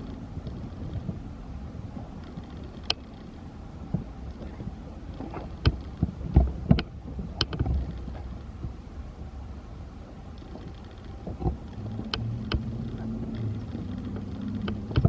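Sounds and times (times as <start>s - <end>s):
wind rumbling on microphone: 0.0s - 15.0s
sharp clicks and knocks: 3.9s - 8.8s, 10.4s - 15.0s.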